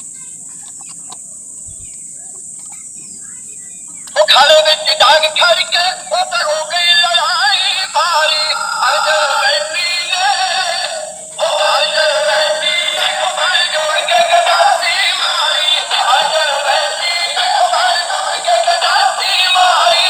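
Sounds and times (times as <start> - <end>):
song with sung vocals: 4.2 - 20.0.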